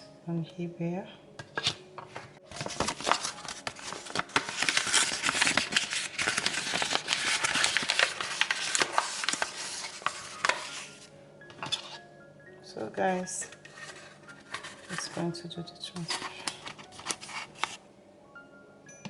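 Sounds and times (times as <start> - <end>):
rustling and crinkling: 1.6 - 12.0, 13.4 - 17.8.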